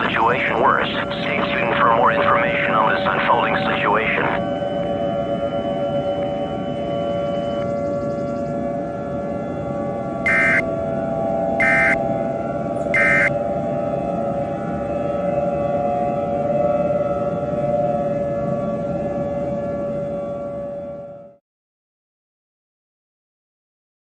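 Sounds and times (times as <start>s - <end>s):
two-note siren tone: 0.0s - 21.4s
warbling data tone bursts: 10.3s - 10.6s, 11.6s - 12.0s, 13.0s - 13.3s.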